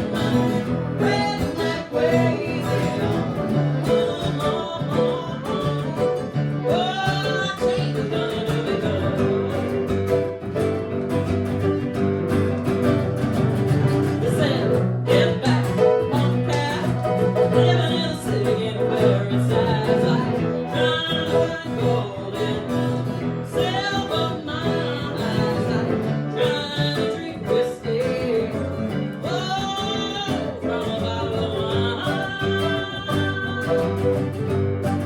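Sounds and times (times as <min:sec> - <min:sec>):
person singing: 0:00.0 - 0:10.4, 0:14.2 - 0:35.0
live rock band playing: 0:00.0 - 0:23.9, 0:24.6 - 0:35.0.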